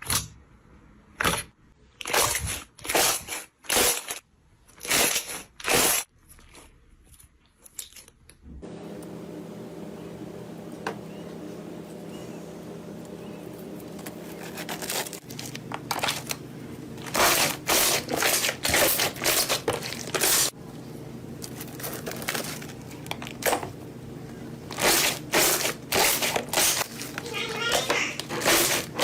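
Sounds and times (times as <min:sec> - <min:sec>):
low steady hum: 0:08.5 - 0:27.6.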